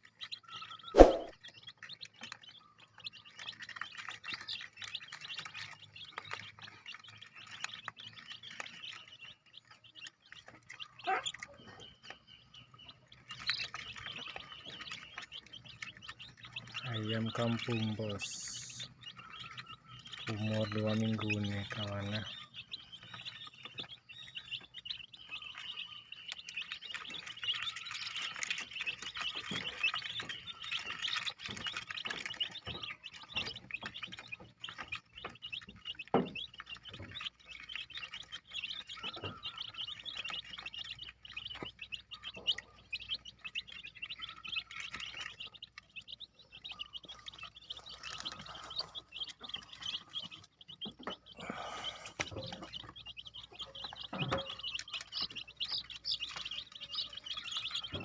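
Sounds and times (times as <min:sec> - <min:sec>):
chicks peeping: 0:00.0 - 0:58.0.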